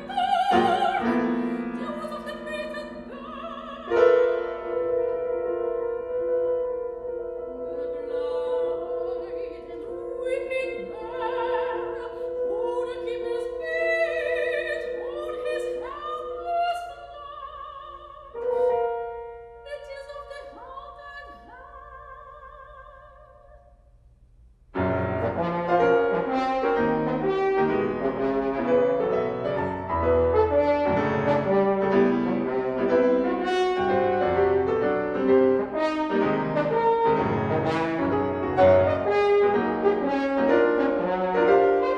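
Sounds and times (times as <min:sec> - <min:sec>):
piano notes: 0:00.0 - 0:21.2, 0:24.8 - 0:41.9
soprano singing: 0:00.0 - 0:23.7
horn playing: 0:24.8 - 0:41.9.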